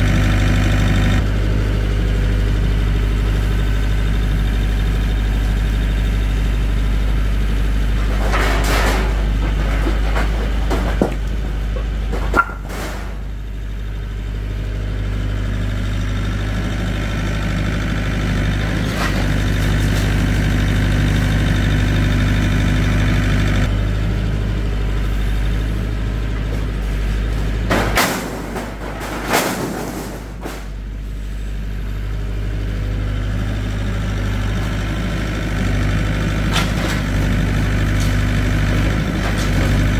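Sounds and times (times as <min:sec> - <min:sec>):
engine idling: 0:00.0 - 0:39.9
short knocks and clatters: 0:08.0 - 0:13.2.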